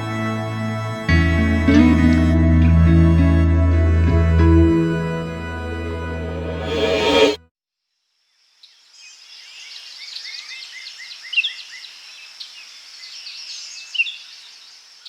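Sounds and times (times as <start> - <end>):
forest birds calling: 8.6 - 14.8.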